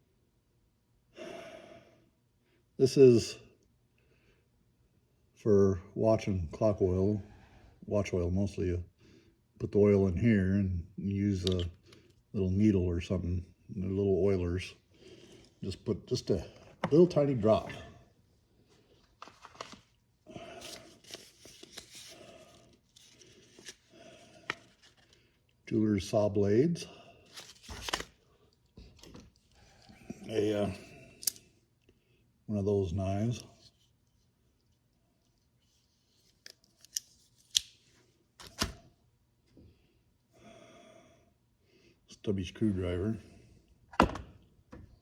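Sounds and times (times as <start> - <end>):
rustling of packaging: 18.7 - 25.4, 27.2 - 30.5.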